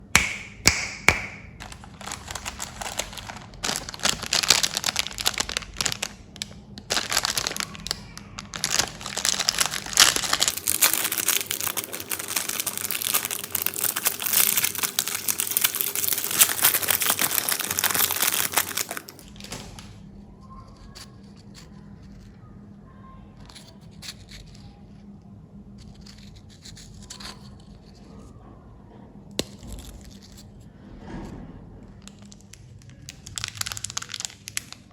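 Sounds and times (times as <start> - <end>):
plastic candy wrappers crinkling: 0.7 - 22.3, 32.0 - 34.9.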